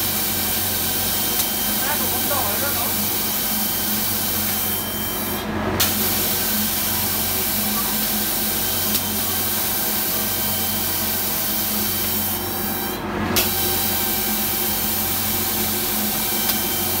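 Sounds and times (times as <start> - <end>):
machine hum: 0.0 - 17.0
air-spray hiss: 2.7 - 4.8.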